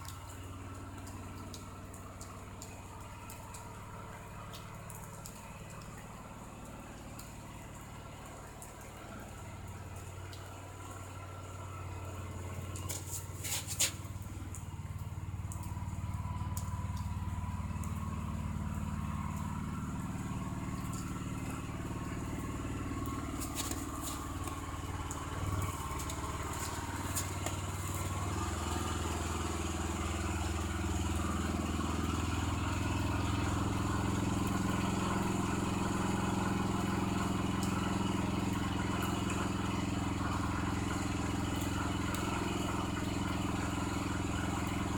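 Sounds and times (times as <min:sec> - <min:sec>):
snowblower engine running: 0:10.2 - 0:44.9.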